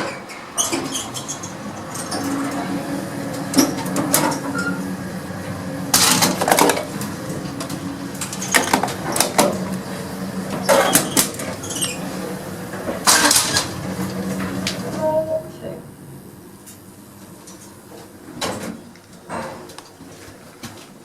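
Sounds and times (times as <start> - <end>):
lift clanks and rattles: 0.0 - 15.1
lift drive humming: 0.0 - 19.3.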